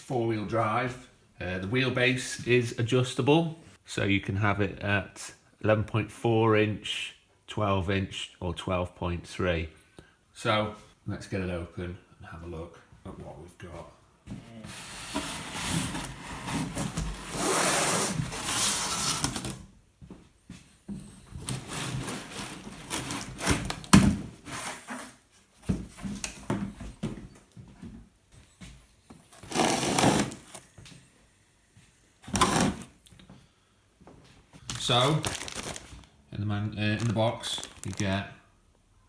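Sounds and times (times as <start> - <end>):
cardboard box scraping and rustling: 14.7 - 19.5, 21.5 - 23.8, 29.4 - 30.6.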